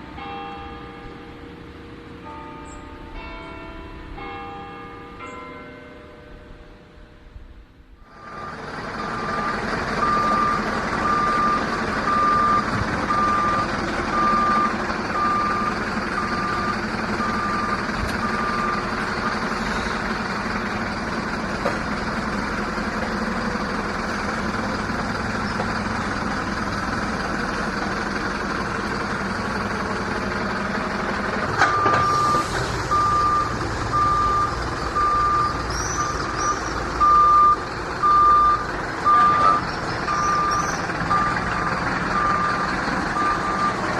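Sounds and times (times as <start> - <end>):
truck engine running: 8.0 - 43.9
backup alarm beeping: 8.3 - 18.8, 31.6 - 41.4, 42.2 - 43.8.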